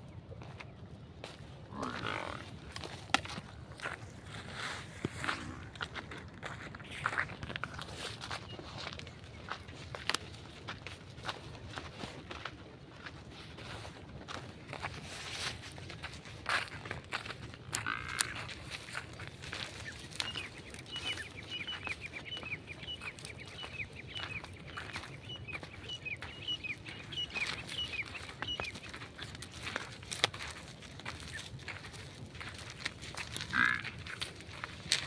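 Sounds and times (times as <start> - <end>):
small birds chirping: 6.5 - 11.5, 17.2 - 35.0.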